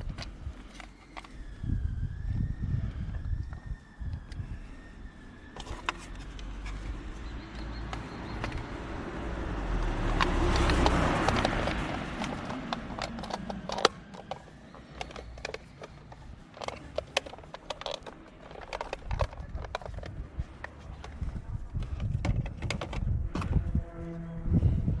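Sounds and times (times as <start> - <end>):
hands handling parts clicking: 0.0 - 1.5, 5.5 - 8.8, 9.8 - 23.0
car noise: 4.1 - 25.0.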